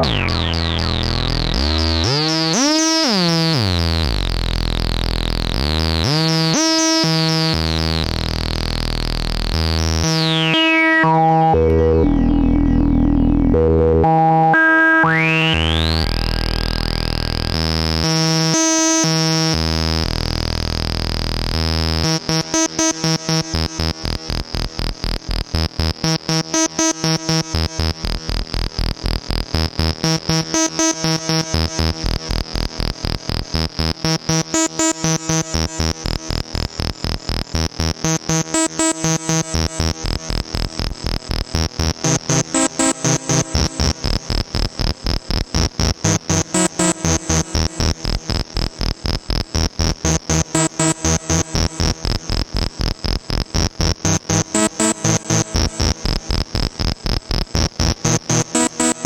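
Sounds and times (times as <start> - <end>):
resonant filter sweep: 0.0 - 3.2
fast pulsing synth pattern: 0.0 - 3.7
analog synthesizer bass notes: 0.0 - 59.0.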